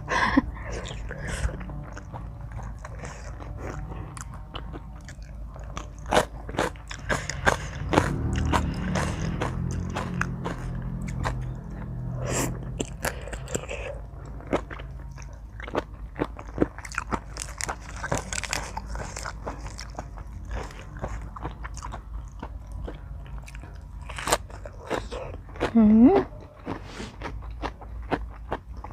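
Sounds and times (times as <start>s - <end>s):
person chewing crunchy food: 0.0s - 28.9s.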